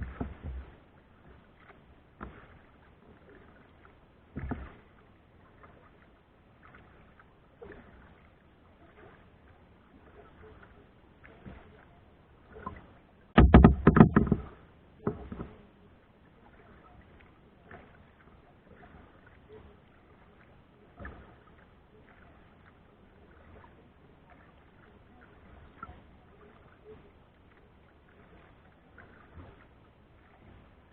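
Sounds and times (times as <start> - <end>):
water and paddle sounds: 0.0 - 30.9
rapid knocks: 13.4 - 14.5.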